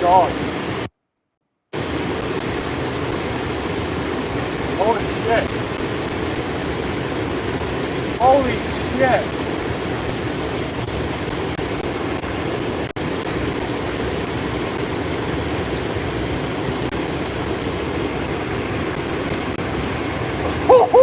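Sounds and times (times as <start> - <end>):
stream water over waterfall: 0.0 - 0.9, 1.8 - 21.0.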